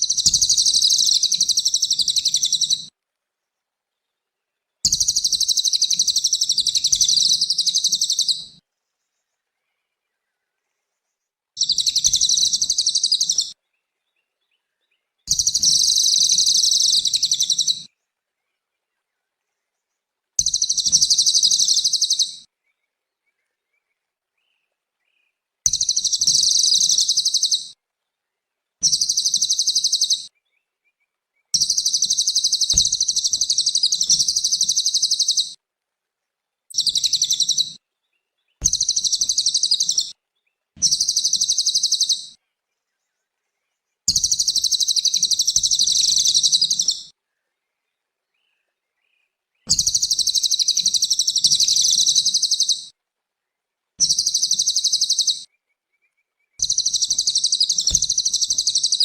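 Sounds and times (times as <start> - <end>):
bird chattering song: 0.0 - 2.9, 4.9 - 8.6, 11.6 - 13.6, 15.2 - 17.9, 20.4 - 22.5, 25.7 - 27.8, 28.8 - 30.4, 31.6 - 35.6, 36.7 - 42.4, 44.1 - 47.1, 49.6 - 52.9, 54.0 - 59.0.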